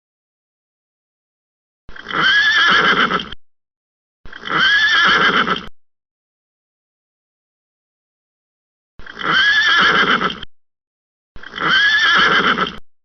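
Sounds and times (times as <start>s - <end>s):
horse whinnying: 1.9s - 3.4s, 4.3s - 5.7s, 9.0s - 10.5s, 11.4s - 12.8s.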